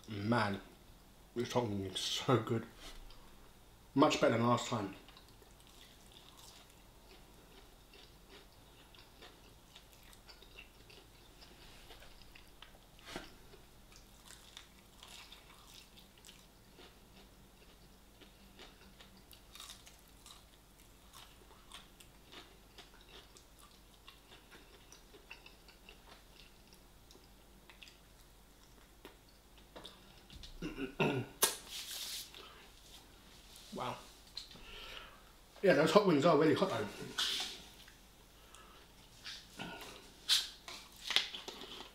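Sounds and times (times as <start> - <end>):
chewing chicken wings: 5.0 - 29.2.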